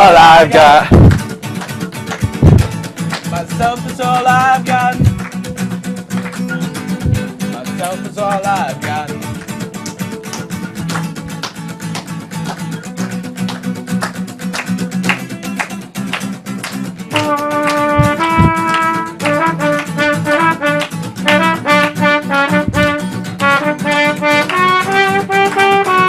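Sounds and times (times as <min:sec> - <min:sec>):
bass guitar: 0:00.0 - 0:26.0
strummed guitar: 0:00.0 - 0:26.0
brass horn melody: 0:17.1 - 0:26.0.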